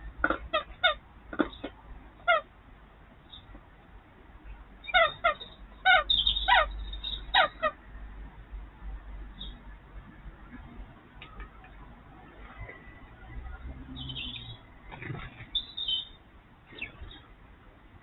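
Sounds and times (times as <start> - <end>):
bird calling: 4.8 - 7.8, 12.6 - 17.3.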